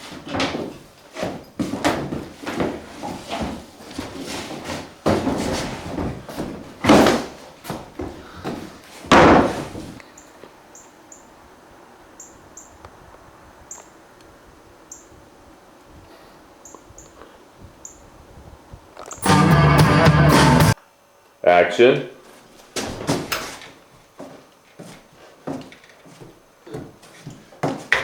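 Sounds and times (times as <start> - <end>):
heavy thumps and bangs: 5.1 - 9.9, 19.2 - 20.8.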